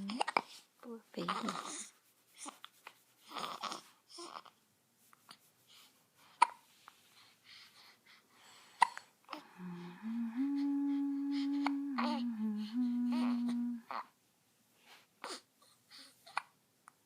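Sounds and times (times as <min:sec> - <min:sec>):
soft breaths: 0:00.0 - 0:17.0
baby hiccuping: 0:06.4 - 0:06.6, 0:08.8 - 0:09.1
humming in held notes: 0:09.5 - 0:13.9.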